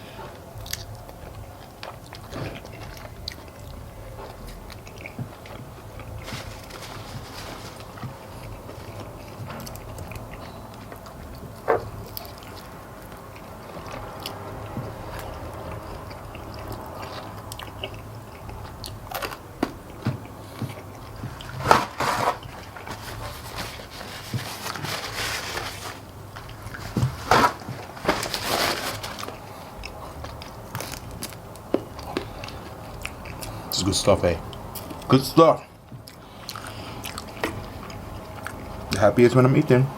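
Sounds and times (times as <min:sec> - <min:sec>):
wet chewing and sucking: 0:07.8 - 0:21.7, 0:29.2 - 0:33.8, 0:35.9 - 0:38.8.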